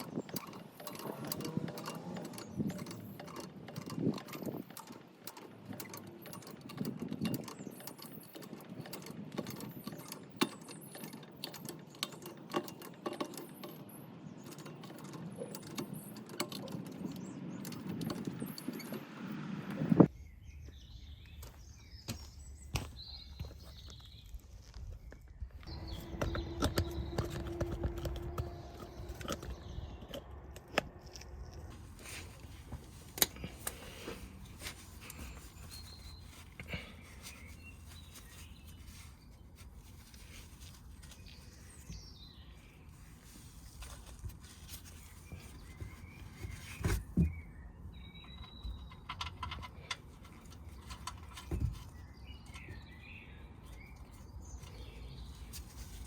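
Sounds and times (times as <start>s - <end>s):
scattered clicks and knocks: 0.0s - 19.3s, 25.6s - 31.8s
birds chirping: 0.0s - 56.0s
low rumble with steady hum: 24.5s - 56.0s.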